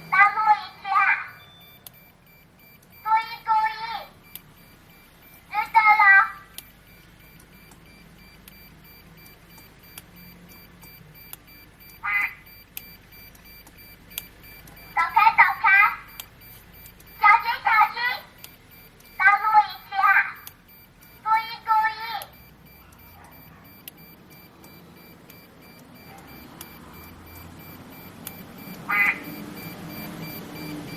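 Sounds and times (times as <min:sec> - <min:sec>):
faint clicks: 0:04.2 - 0:05.8, 0:06.5 - 0:15.0, 0:16.1 - 0:17.3, 0:18.3 - 0:19.3, 0:20.4 - 0:21.3, 0:22.2 - 0:30.9.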